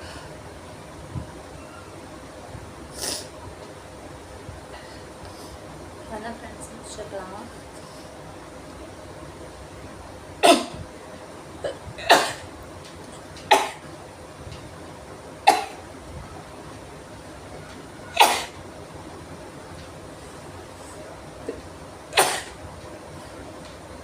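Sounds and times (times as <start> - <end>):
person sneezing: 18.2 - 18.6, 22.2 - 22.6.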